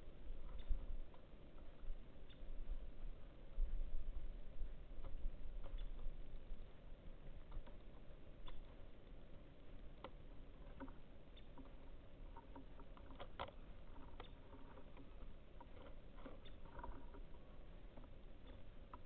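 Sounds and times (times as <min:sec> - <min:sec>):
birds pecking at feeder: 0:04.3 - 0:19.0.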